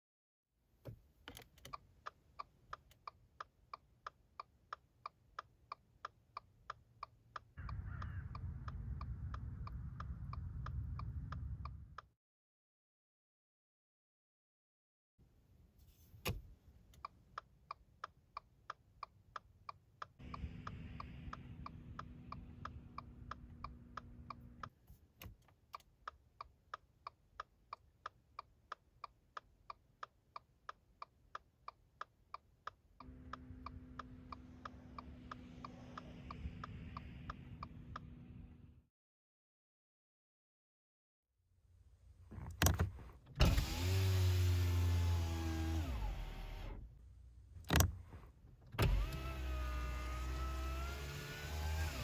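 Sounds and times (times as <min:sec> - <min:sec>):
turn signal ticking: 0:01.2 - 0:12.1, 0:16.8 - 0:24.8, 0:25.4 - 0:38.7
low engine hum: 0:07.6 - 0:12.1, 0:20.2 - 0:24.7, 0:33.0 - 0:38.8.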